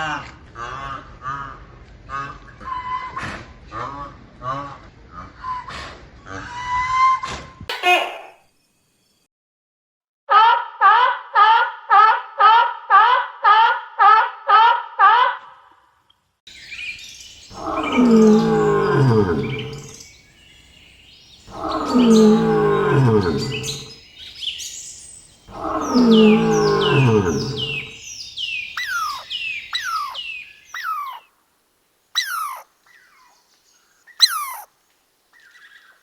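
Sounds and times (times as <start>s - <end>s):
birds chirping: 16.5s - 31.3s, 32.2s - 36.0s
long low falling animal call: 17.4s - 20.0s, 21.4s - 24.0s, 25.4s - 31.3s, 32.2s - 32.7s, 34.2s - 34.7s
short pitched animal calls: 25.5s - 28.0s, 28.8s - 31.3s, 32.2s - 32.7s, 34.2s - 34.7s.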